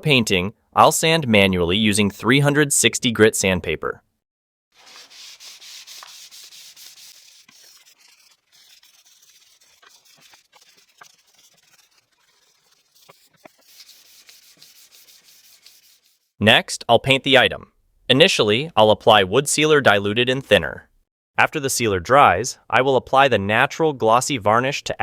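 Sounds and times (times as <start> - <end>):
sandpaper rubbing on wood: 4.8 - 16.3.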